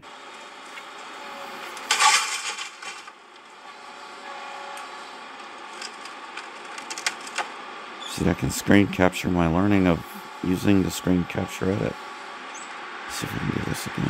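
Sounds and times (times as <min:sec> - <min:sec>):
steady background noise: 0:00.0 - 0:14.0
building material crashing: 0:01.6 - 0:03.3.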